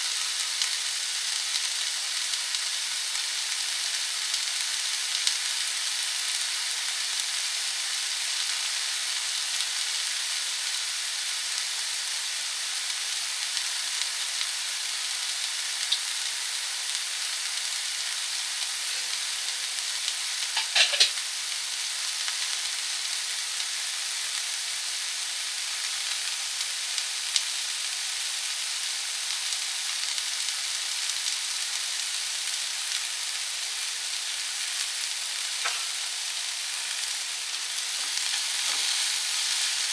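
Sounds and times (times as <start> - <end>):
peppers sizzling in a frying pan: 0.0 - 39.9
utensil clattering against pan: 20.6 - 21.2.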